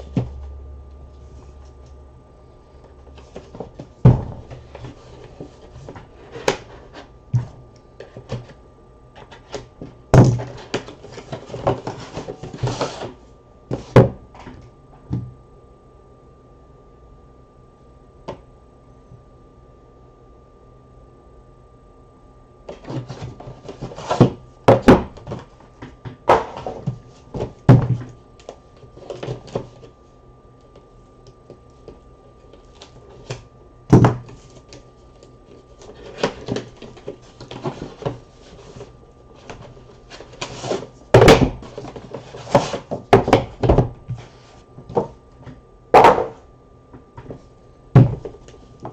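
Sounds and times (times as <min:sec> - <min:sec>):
cardboard boxes knocking and thunking: 0:03.2 - 0:06.6, 0:10.1 - 0:13.1, 0:13.7 - 0:15.3, 0:22.7 - 0:28.2, 0:33.9 - 0:34.6, 0:36.0 - 0:46.4, 0:48.0 - 0:48.9.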